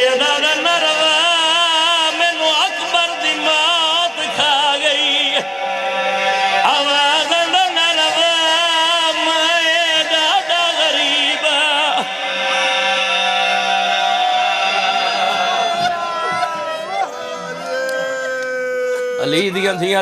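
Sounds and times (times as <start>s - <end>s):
man singing a mournful chant: 0.0s - 15.1s.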